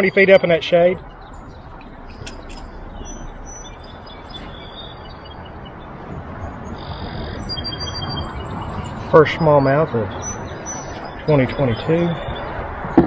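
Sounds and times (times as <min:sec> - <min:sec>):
small birds whistling: 0:00.0 - 0:13.0
steady rushing noise: 0:00.0 - 0:13.0.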